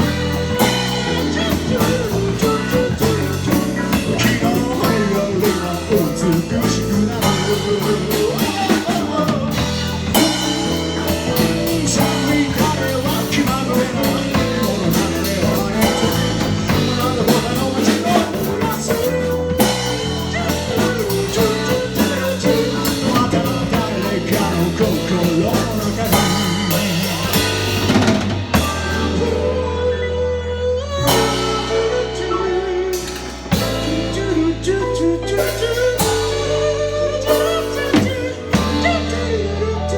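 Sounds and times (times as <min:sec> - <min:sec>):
rock band playing: 0:00.0 - 0:39.9.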